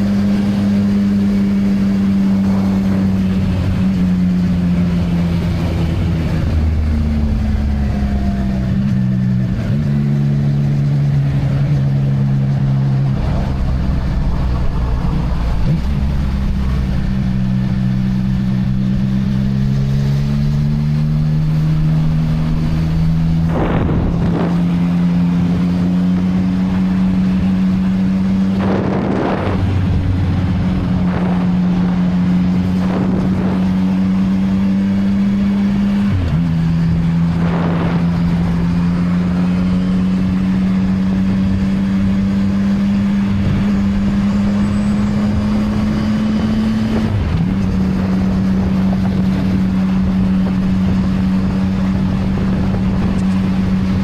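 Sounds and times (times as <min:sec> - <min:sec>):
motorcycle engine running: 0:00.0 - 0:54.0
wind noise rushes: 0:00.0 - 0:54.0.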